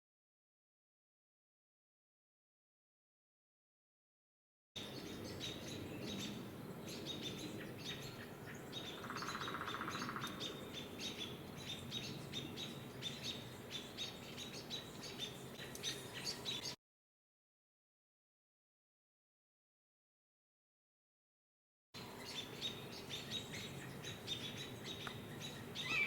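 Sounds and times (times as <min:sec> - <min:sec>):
songbirds chirping: 0:04.8 - 0:16.8, 0:22.0 - 0:26.0.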